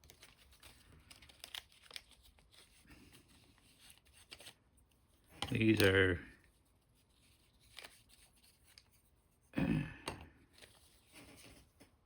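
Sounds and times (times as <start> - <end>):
package rustling and clicking: 0.0 - 2.6, 5.4 - 6.1
person humming: 9.6 - 10.2.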